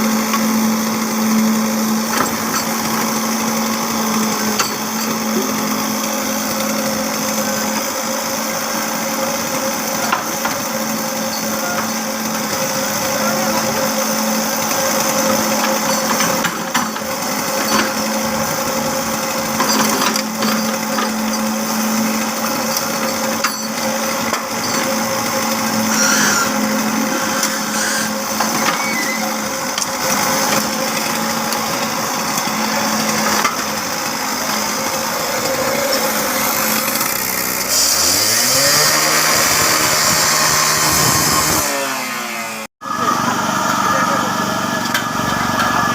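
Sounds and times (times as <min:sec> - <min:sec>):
machine motor humming: 0:20.2 - 0:45.9.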